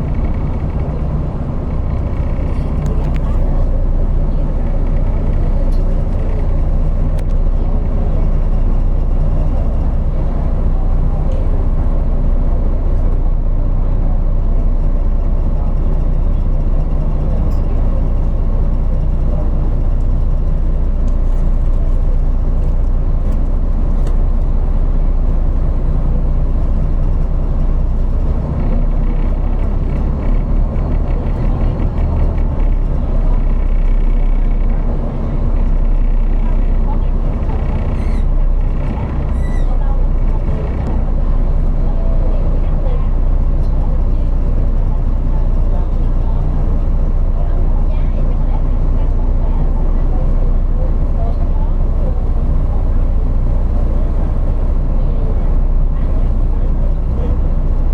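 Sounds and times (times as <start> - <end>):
road noise: 0.0 - 57.9
vehicle engine hum: 0.0 - 57.9.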